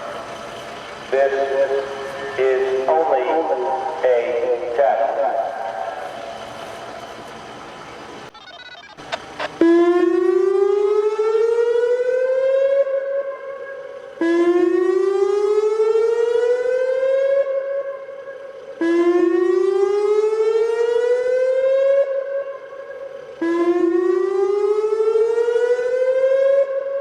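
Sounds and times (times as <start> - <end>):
clicks: 8.3 - 9.6
warning siren rising whoop: 8.3 - 27.0.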